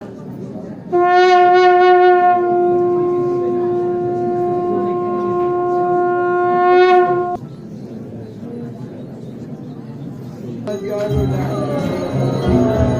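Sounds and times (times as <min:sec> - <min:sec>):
conch shell blown: 0:00.9 - 0:07.4.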